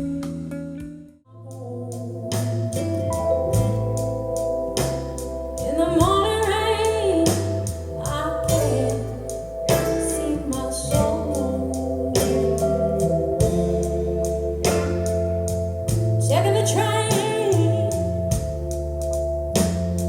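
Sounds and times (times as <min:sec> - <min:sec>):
bass: 0:00.0 - 0:20.0
person singing: 0:01.3 - 0:04.2, 0:05.6 - 0:15.2, 0:16.2 - 0:18.4
organ chords: 0:01.9 - 0:20.0.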